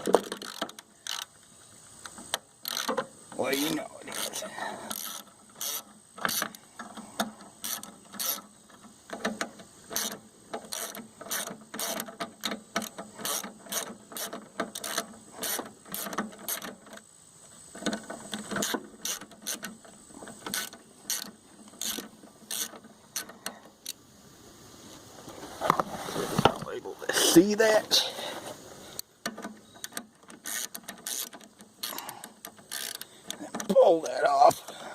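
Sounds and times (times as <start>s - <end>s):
ratchet wrench clicking: 0.2s - 1.3s, 2.6s - 3.0s, 4.1s - 6.6s, 7.6s - 8.5s, 9.9s - 16.7s, 18.5s - 19.7s, 20.4s - 24.0s, 29.8s - 33.7s.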